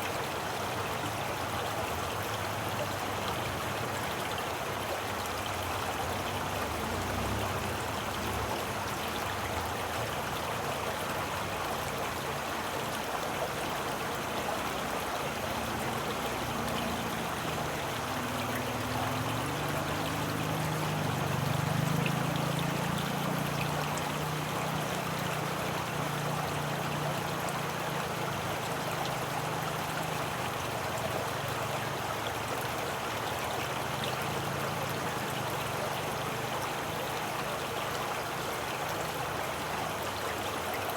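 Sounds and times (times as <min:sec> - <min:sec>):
stream water rushing: 0:00.0 - 0:40.9.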